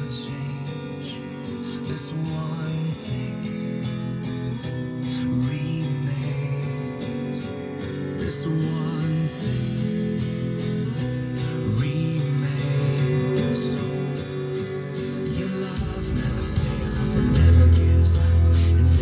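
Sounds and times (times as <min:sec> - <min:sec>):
guitar song with singing voice: 0:00.0 - 0:19.0.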